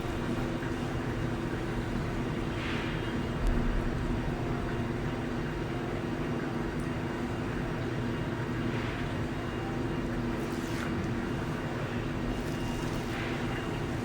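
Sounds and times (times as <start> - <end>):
steady machine hum: 0.0 - 5.1.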